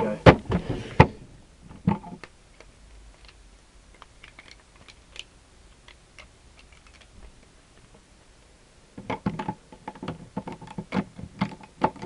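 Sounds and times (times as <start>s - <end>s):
plastic puzzle tiles clicking: 2.2s - 7.1s.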